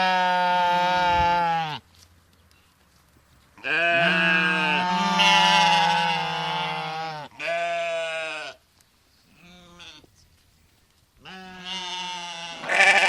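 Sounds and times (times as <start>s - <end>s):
sheep bleating: 0.0s - 1.8s, 3.6s - 8.6s, 9.4s - 10.1s, 11.2s - 13.0s.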